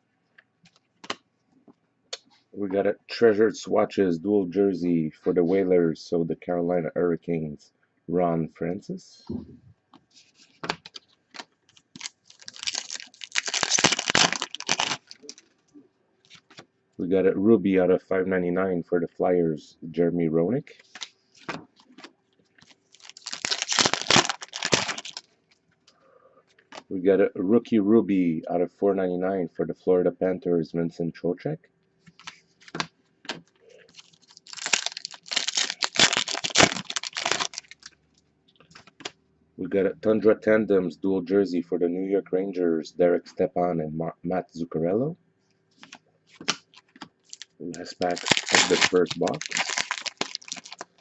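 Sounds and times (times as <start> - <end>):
wrapper crinkling and tearing: 11.3 - 15.5, 22.6 - 25.3, 33.9 - 37.9, 45.8 - 51.0.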